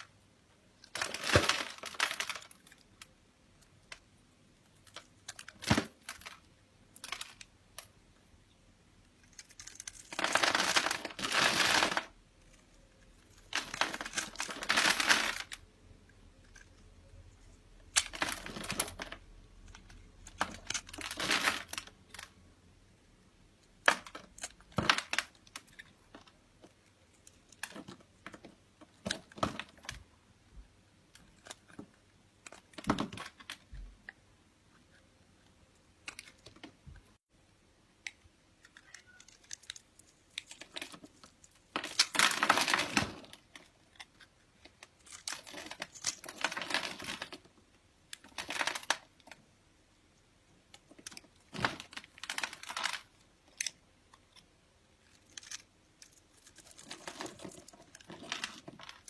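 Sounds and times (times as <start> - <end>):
scraping or crinkling: 9.3 - 15.6, 38.6 - 47.6, 55.0 - 59.0.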